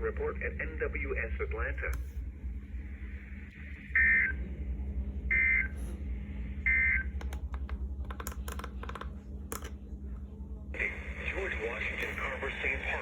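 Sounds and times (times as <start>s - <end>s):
steady receiver hum: 0.0s - 13.0s.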